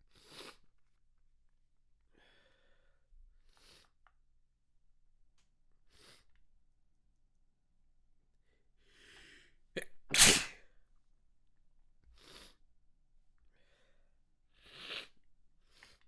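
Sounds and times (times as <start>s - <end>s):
quiet breaths: 2.1s - 4.2s, 13.4s - 16.0s
person sneezing: 9.8s - 10.6s.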